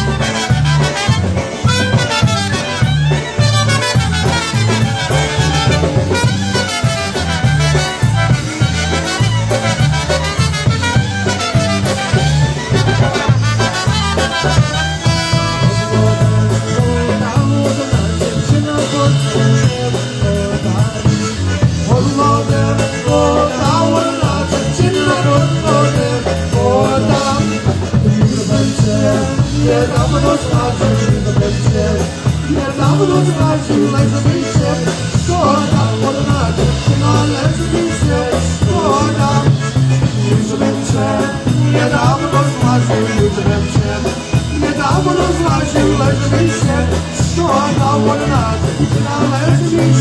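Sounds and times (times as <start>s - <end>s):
polka band playing: 0.0s - 50.0s.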